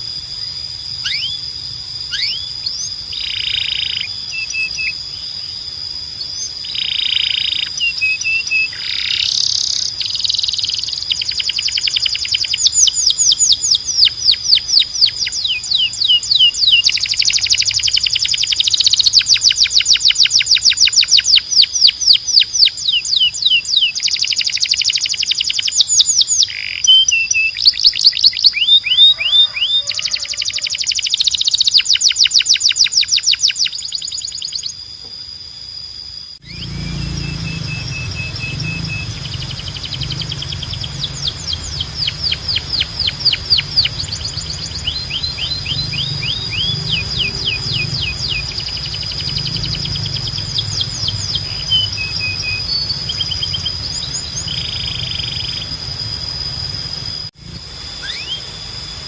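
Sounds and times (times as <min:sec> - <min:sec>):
canary singing: 0:00.0 - 0:34.9, 0:36.4 - 0:57.3, 0:57.9 - 0:59.0.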